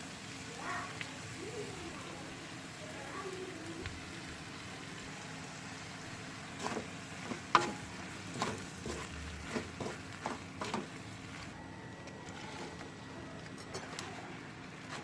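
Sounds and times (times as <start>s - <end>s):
steady sizzle: 0.0s - 15.0s
utensil knocking and scraping pan: 6.6s - 11.0s.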